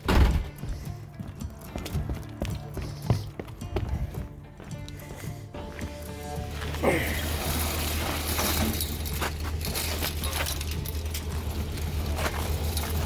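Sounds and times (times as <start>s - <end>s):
metallic clinks and rattles: 7.0s - 13.0s.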